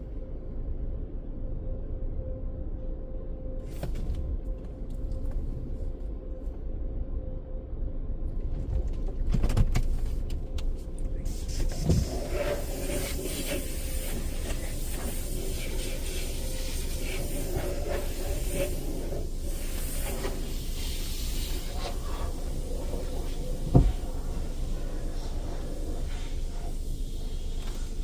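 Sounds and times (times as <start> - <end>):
hissing spray: 11.3 - 28.0.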